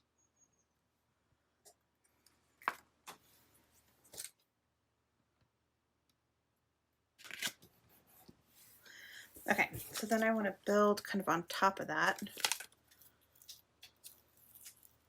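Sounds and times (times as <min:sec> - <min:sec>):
paper rustling: 0:07.2 - 0:08.8, 0:09.4 - 0:10.4, 0:12.1 - 0:15.0.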